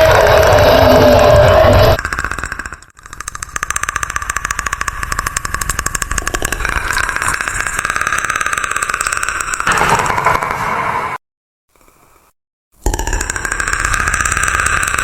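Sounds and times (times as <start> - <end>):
fast clicking creature rattle: 2.0 - 10.6, 12.8 - 15.0.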